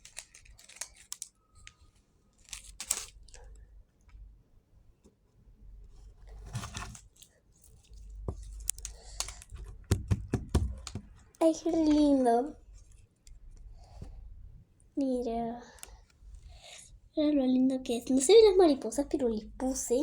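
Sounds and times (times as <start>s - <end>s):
plastic packaging rustling: 0.0s - 3.6s.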